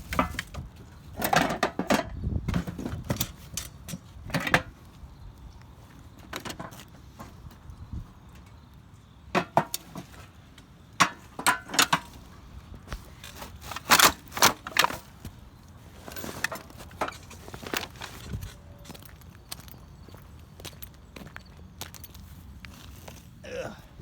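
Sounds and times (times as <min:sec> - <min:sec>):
scrap clattering in a dumpster: 0:00.0 - 0:04.8, 0:12.9 - 0:18.6.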